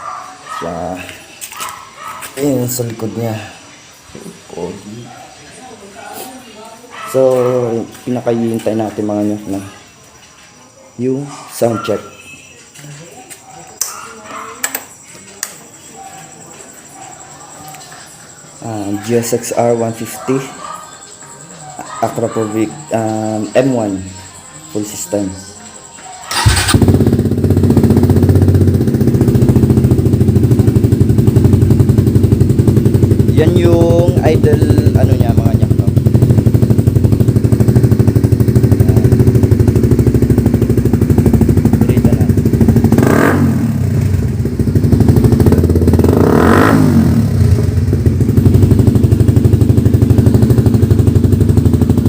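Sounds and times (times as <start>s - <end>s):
motorcycle engine idling: 26.3s - 52.0s.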